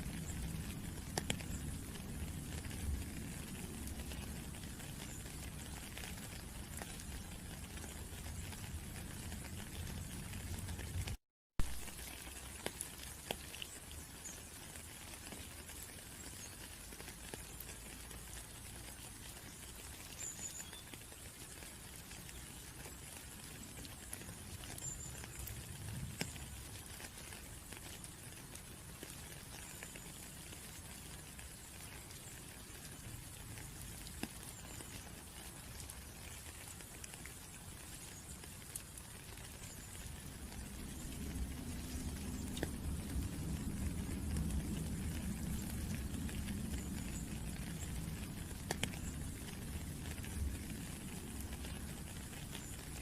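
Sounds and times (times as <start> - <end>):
rain pattering: 0.0 - 53.0.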